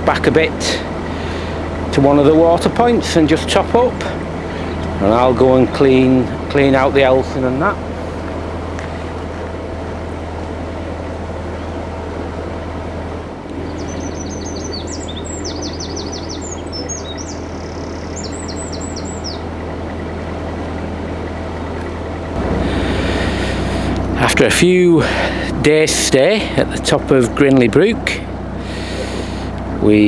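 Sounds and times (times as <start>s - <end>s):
diesel engine humming: 0.0s - 30.0s
bird chirping and trilling: 13.6s - 20.5s.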